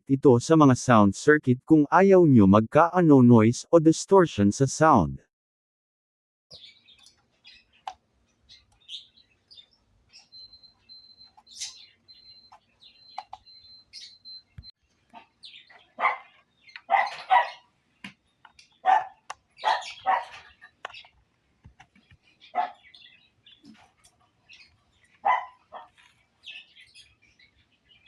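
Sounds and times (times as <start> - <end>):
small birds chirping: 6.5 - 28.0
dog barking: 16.0 - 16.3, 16.9 - 17.6, 18.8 - 20.4, 22.6 - 22.8, 25.2 - 26.0.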